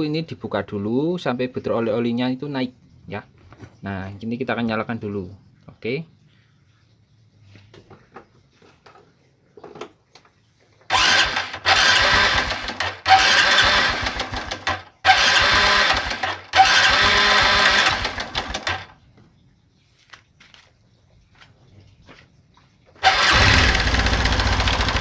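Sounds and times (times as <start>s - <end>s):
motorcycle engine cranking: 10.9s - 19.0s, 23.0s - 25.0s.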